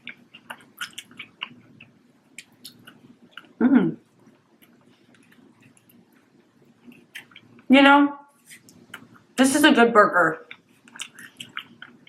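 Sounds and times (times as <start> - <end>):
close chewing and mouth clicks: 0.0 - 3.6, 4.2 - 7.7, 8.4 - 9.2, 10.4 - 12.0
person humming: 3.6 - 4.0.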